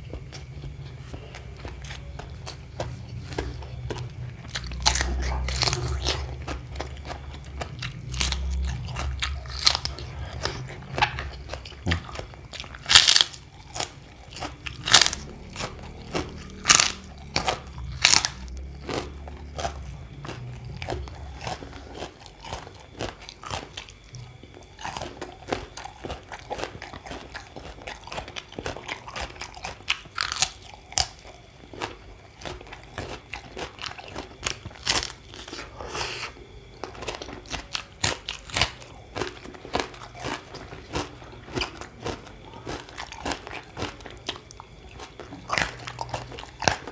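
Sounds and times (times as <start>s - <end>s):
low hum: 0.0s - 22.9s
person chewing crunchy food: 0.0s - 46.9s.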